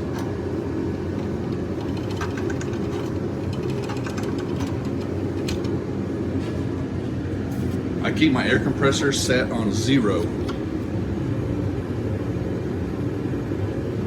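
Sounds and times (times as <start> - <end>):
steady low hum: 0.0 - 14.0
short clicks and rattles: 1.1 - 5.8
air hose reel winding in: 1.2 - 5.7.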